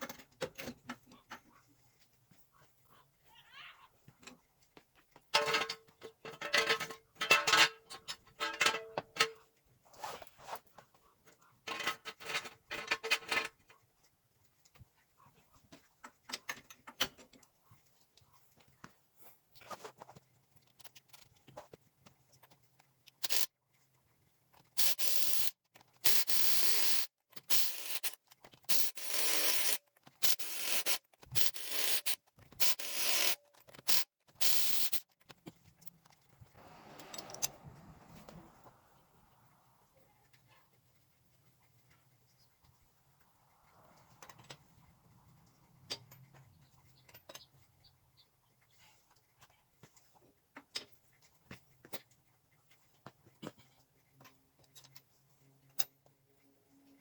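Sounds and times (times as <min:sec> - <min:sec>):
impact wrench bursts: 0:26.1 - 0:35.0.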